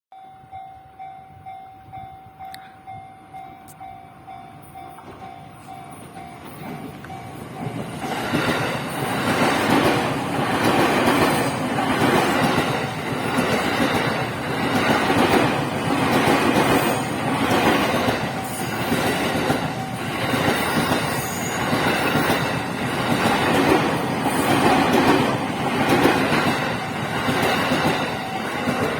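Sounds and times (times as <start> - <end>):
level crossing warning bell: 0.1 - 8.7, 26.7 - 28.9.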